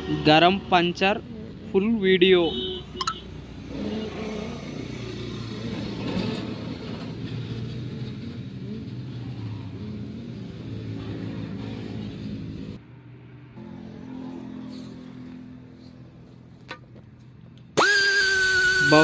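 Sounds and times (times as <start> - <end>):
engine running steadily: 14.6 - 19.0.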